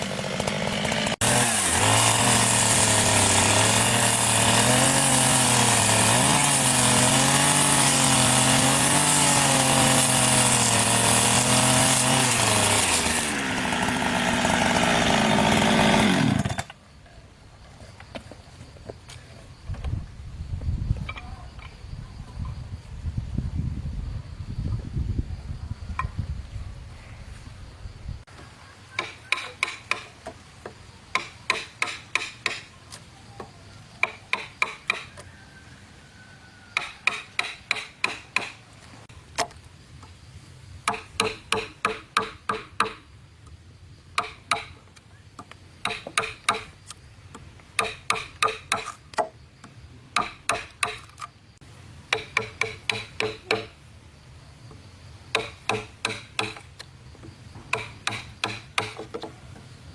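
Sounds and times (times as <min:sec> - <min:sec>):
hammer driving nails into wood: 0:31.2 - 0:32.7, 0:34.0 - 0:35.1, 0:36.8 - 0:38.6, 0:45.8 - 0:46.7, 0:47.8 - 0:49.3, 0:50.2 - 0:51.3, 0:52.1 - 0:53.7, 0:55.3 - 0:56.6, 0:57.7 - 0:59.3.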